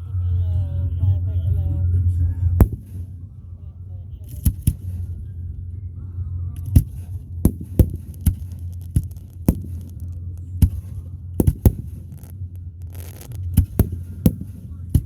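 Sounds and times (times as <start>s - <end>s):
steady low hum: 0.0s - 15.0s
fireworks bangs: 2.6s - 3.6s, 4.2s - 5.3s, 6.6s - 15.0s.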